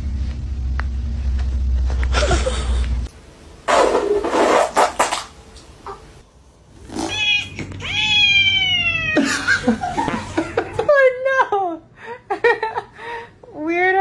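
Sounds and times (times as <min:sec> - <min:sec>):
cat meowing: 0:07.0 - 0:09.2.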